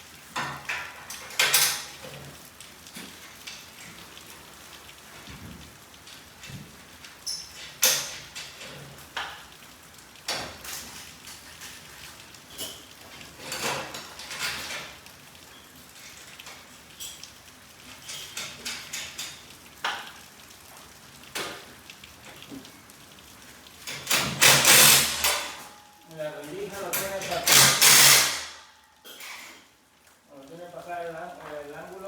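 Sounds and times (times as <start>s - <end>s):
metal hardware scraping: 27.0s - 28.5s.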